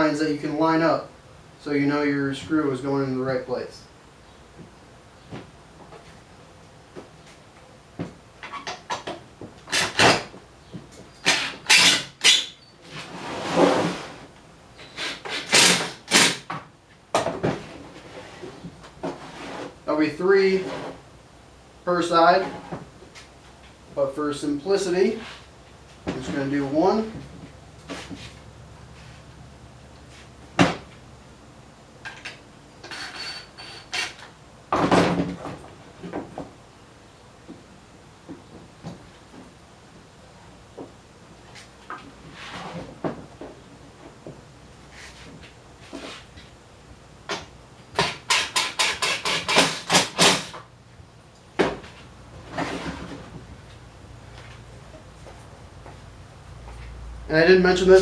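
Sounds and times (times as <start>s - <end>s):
wood scraping on wood: 11.3s - 16.0s, 17.9s - 19.9s, 44.9s - 46.3s
wood scraping: 17.9s - 19.8s.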